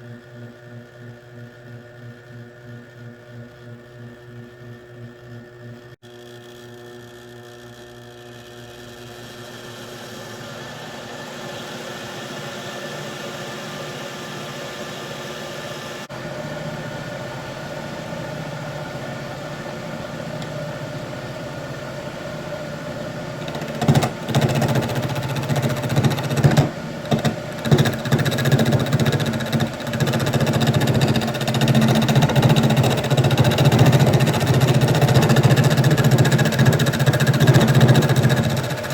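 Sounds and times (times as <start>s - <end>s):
wood lathe motor humming: 21.9s - 38.9s
turning tool cutting wood: 23.3s - 38.9s.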